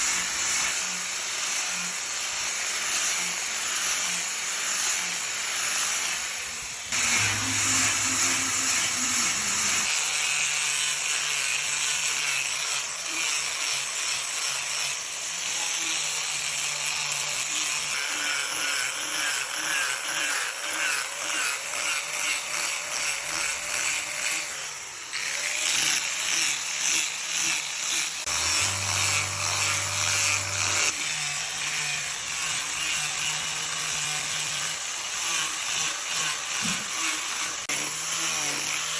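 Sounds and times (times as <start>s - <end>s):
power tool carving wood: 0.0s - 38.9s
low hum rising: 7.0s - 9.8s.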